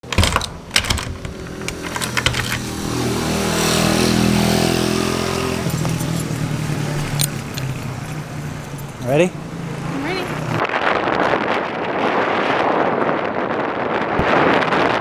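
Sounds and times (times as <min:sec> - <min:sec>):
moped engine revving: 0:00.0 - 0:10.6.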